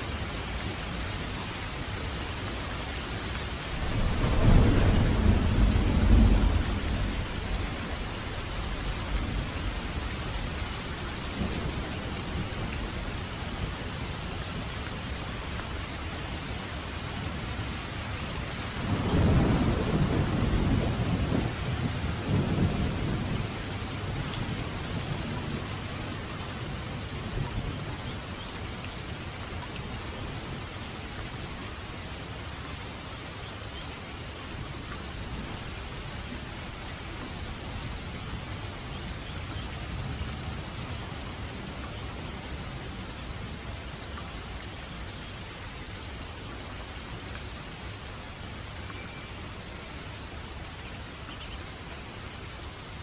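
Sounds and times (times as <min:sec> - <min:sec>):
light rain hissing: 0:00.0 - 0:53.0
distant thunder rumbling: 0:03.6 - 0:13.8, 0:18.6 - 0:28.4.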